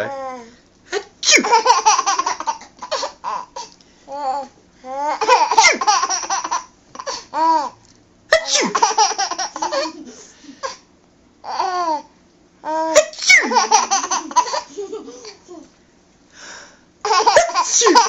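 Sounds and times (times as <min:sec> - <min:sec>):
baby laughing: 0:01.4 - 0:03.7, 0:05.1 - 0:07.8, 0:08.5 - 0:10.8, 0:12.7 - 0:15.7, 0:17.0 - 0:18.0.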